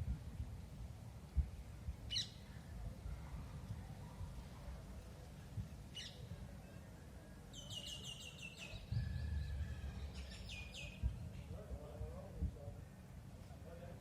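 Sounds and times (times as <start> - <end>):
bird chirping: 7.5 - 11.4.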